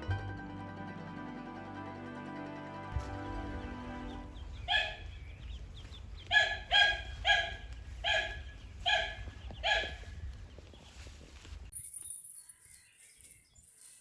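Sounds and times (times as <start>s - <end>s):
animal barking: 4.6s - 5.2s, 6.2s - 10.1s.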